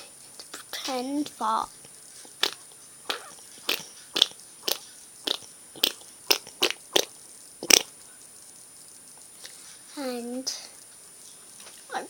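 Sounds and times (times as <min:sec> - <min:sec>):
child making fart noises: 0:02.4 - 0:07.9.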